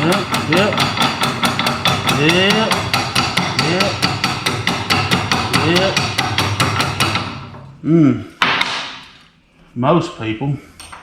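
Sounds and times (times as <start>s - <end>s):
fast hammering on metal: 0.0s - 7.8s, 8.4s - 9.1s.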